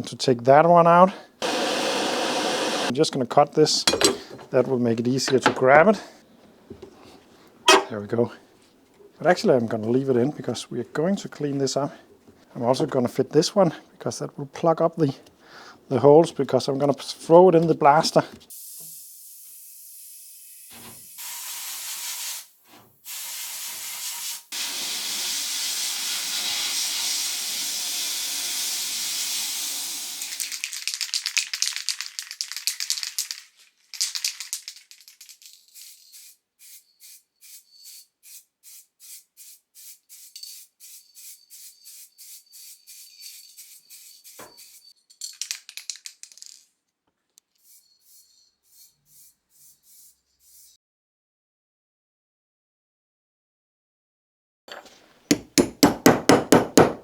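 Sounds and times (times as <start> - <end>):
blast cabinet hissing: 1.4 - 2.9, 7.7 - 8.0.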